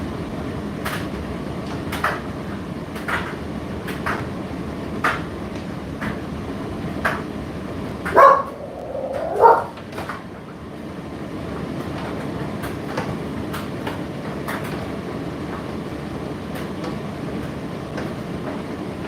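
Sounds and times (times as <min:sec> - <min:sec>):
tumble dryer drum rumbling: 0:00.0 - 0:19.0
load knocking in dryer drum: 0:11.6 - 0:15.8.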